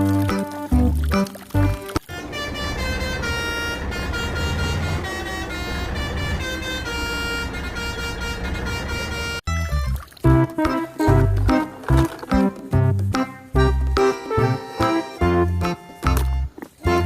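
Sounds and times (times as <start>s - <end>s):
vehicle engine rumble: 0.8s - 14.0s
multi-tone horn: 2.1s - 9.4s, 10.4s - 12.1s.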